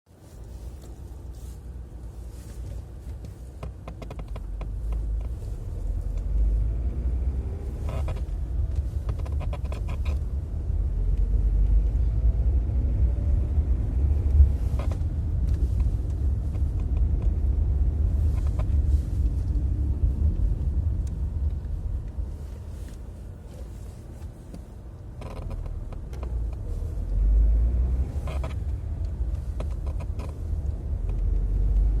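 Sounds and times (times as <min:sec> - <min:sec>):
car rumbling on the move: 0:00.2 - 0:32.0
car pedal creaking: 0:02.6 - 0:06.5, 0:07.2 - 0:12.0, 0:14.2 - 0:19.7, 0:20.3 - 0:27.0, 0:27.7 - 0:32.0.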